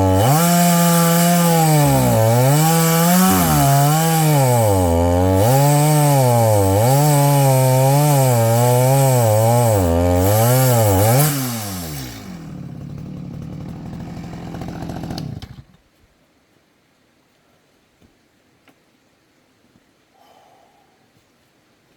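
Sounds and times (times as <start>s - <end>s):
chainsaw engine cutting: 0.0s - 15.8s.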